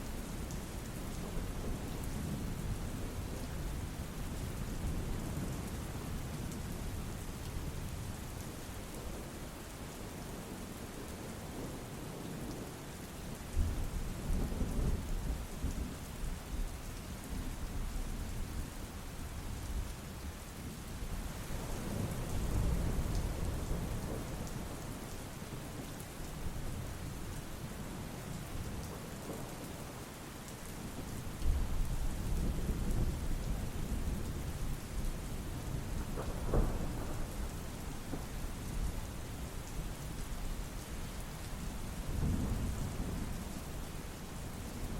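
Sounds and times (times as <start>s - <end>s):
steady rain: 0.0s - 44.9s
low thunder rumbling: 31.4s - 40.2s.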